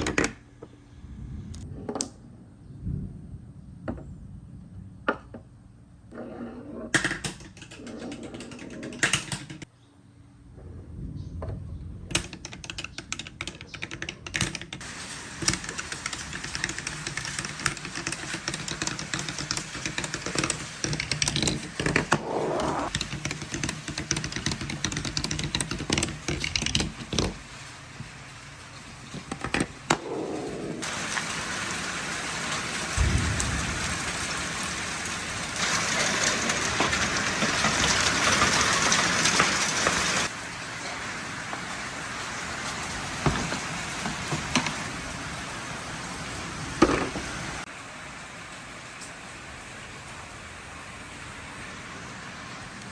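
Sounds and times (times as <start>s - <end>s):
marbles rolling on wooden track: 6.2s - 9.7s, 12.1s - 28.2s, 29.0s - 31.7s, 33.8s - 40.3s, 46.8s - 47.4s.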